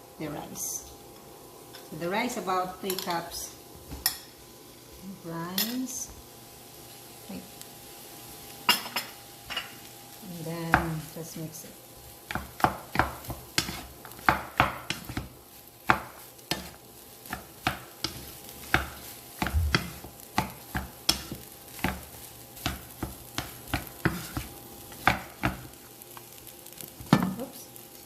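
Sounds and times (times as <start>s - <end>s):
faint sizzle: 0.0s - 28.0s
spatula scraping a pan: 12.3s - 15.3s, 15.9s - 25.6s.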